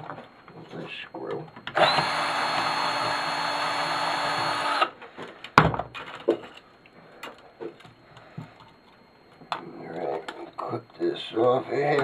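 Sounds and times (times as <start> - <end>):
power drill whining: 1.6 - 5.0.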